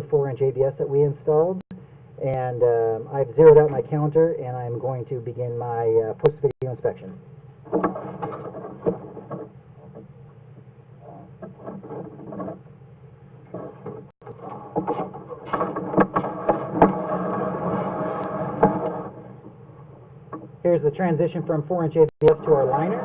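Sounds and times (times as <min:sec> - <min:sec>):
steady low hum: 0:00.0 - 0:23.0
cable rattling and scraping: 0:07.6 - 0:10.2, 0:11.0 - 0:12.7, 0:13.4 - 0:20.5, 0:22.2 - 0:23.0.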